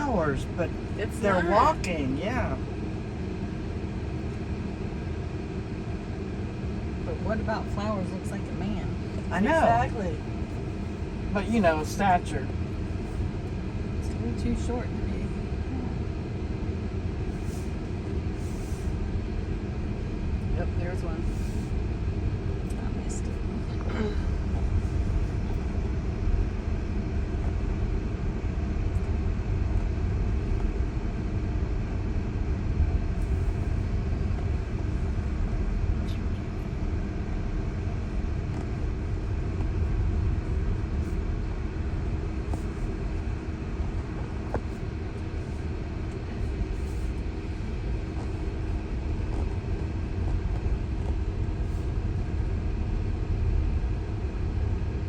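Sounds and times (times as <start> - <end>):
faint steady hum: 0.0 - 55.0
road and tyre rumble: 0.0 - 55.0.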